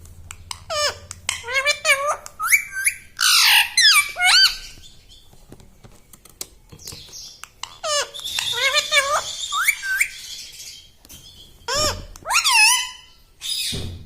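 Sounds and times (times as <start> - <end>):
parakeet squawking: 0.5 - 5.1, 7.1 - 10.9, 11.6 - 13.8.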